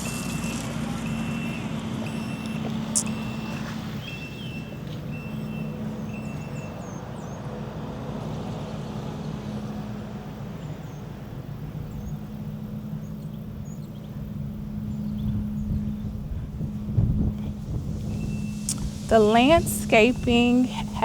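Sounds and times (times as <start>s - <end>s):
reversing alarm beeping: 0.0s - 7.3s
small birds chirping: 0.0s - 7.6s
vehicle engine droning: 0.0s - 21.0s.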